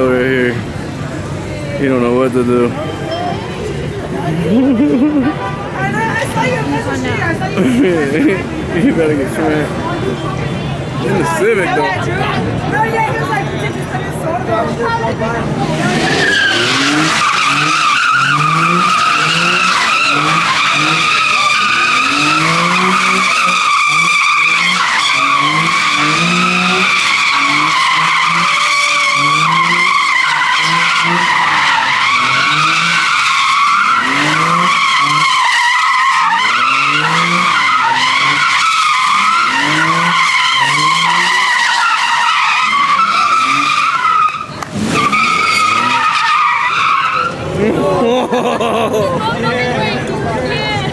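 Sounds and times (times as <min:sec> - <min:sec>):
tires squealing: 0:00.0 - 0:48.6
engine revving: 0:15.3 - 0:47.6.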